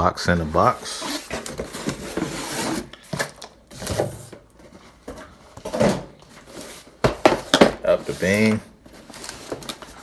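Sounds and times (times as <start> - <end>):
cardboard box rustling and scraping: 0.5 - 4.7.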